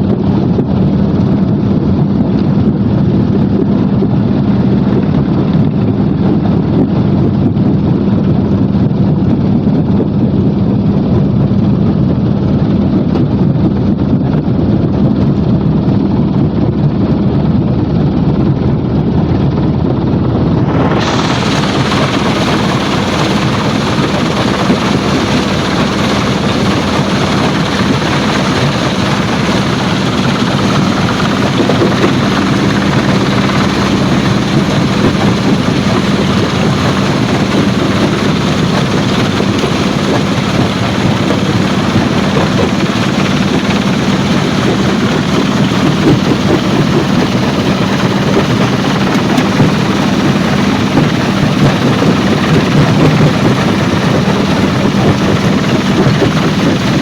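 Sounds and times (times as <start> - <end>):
stone crushing machinery: 20.9 - 57.0.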